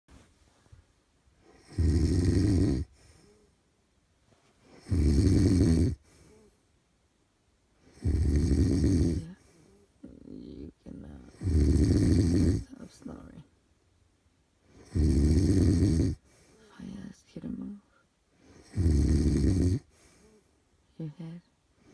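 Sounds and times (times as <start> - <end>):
man snoring: 1.5 - 3.0, 4.8 - 6.0, 7.9 - 9.4, 11.3 - 12.7, 14.8 - 16.2, 18.6 - 19.9
faint breath out: 2.8 - 3.6, 6.0 - 6.7, 9.3 - 10.0, 16.2 - 16.8, 19.9 - 20.6.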